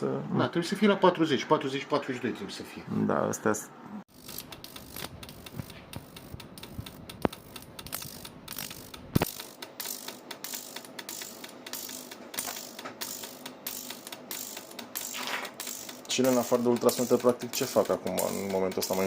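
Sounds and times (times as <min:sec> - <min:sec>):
fuel injectors clicking rapidly: 0:04.1 - 0:19.0.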